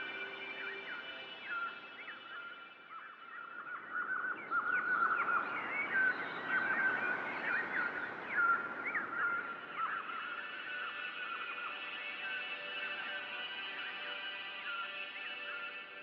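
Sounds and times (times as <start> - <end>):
small birds chirping: 0.0 - 12.8.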